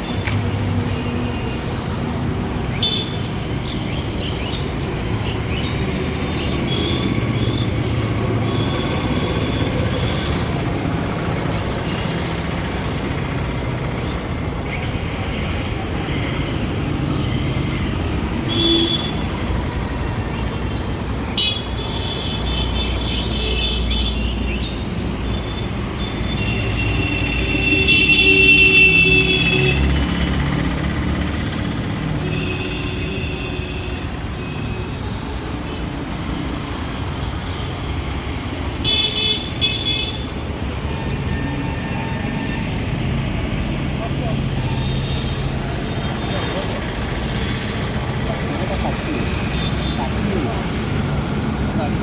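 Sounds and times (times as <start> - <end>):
road traffic noise: 0.0 - 52.0
vehicle horns tooting: 2.8 - 3.3, 18.4 - 19.4, 25.4 - 30.2, 38.8 - 42.8, 48.6 - 50.8.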